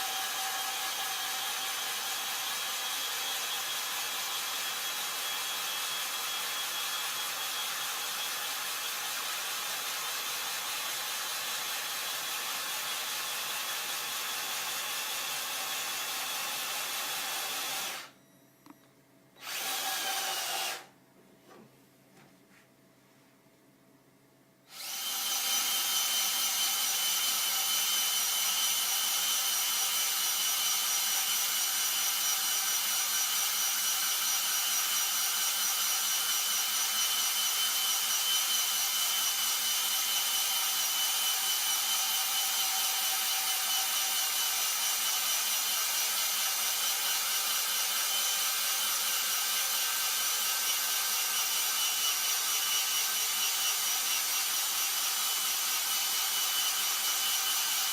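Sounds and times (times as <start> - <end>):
cordless drill whining: 0.0 - 18.2, 19.4 - 20.9, 24.7 - 57.9.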